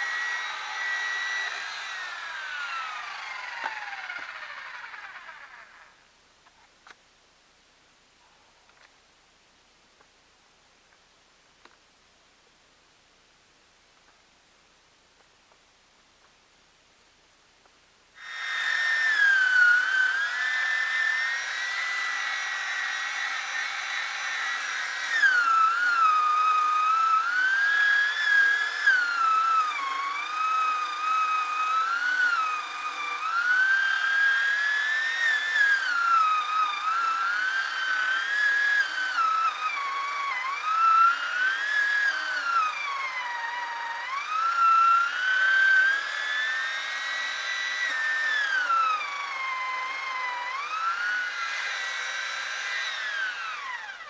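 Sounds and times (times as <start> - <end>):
chainsaw running at high revs: 0.0 - 6.0, 18.2 - 54.0.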